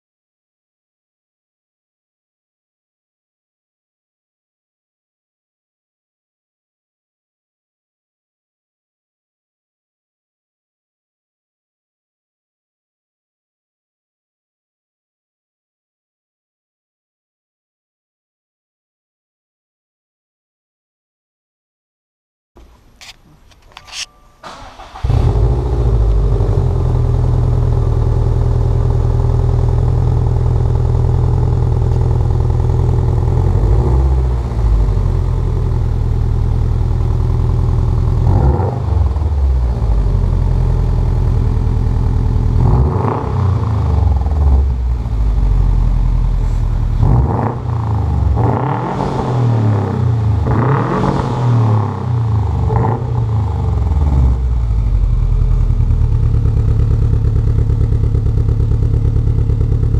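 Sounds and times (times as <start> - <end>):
car engine idling and revving: 24.4 - 59.9.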